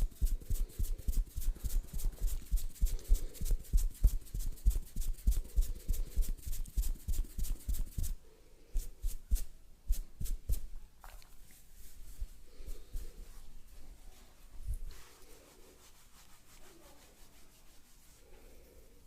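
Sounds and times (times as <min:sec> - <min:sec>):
hands patting a head: 0:00.0 - 0:08.2
soft rubbing: 0:00.0 - 0:19.0.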